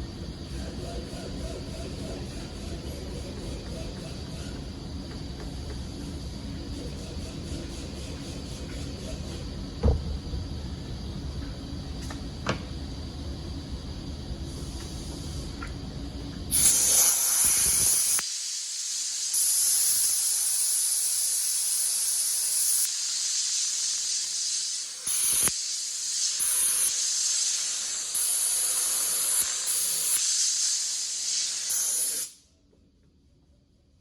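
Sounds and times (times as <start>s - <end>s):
high-pitched hissing spray: 16.5s - 32.4s.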